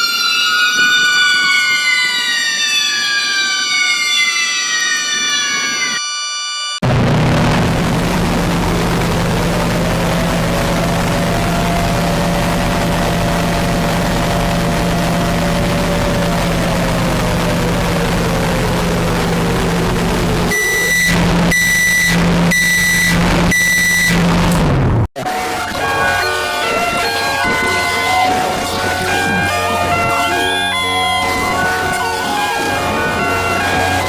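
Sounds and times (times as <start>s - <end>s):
warning siren wailing: 0.0s - 24.5s, 25.2s - 34.0s
constant low hum: 6.8s - 24.7s
short high-pitched beeps: 20.5s - 24.2s.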